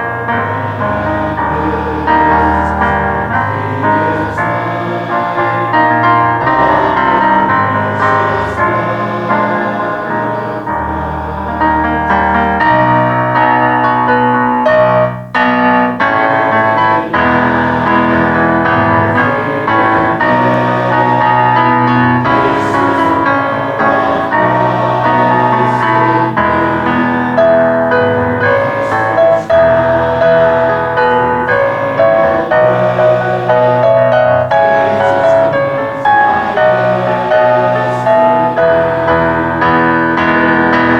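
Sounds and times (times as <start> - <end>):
keyboard playing church chords: 0.0 - 40.9.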